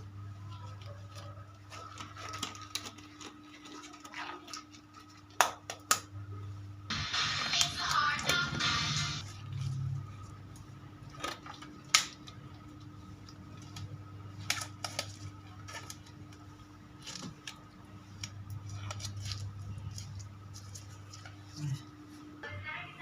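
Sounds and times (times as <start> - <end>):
steady low hum: 6.1 - 23.0.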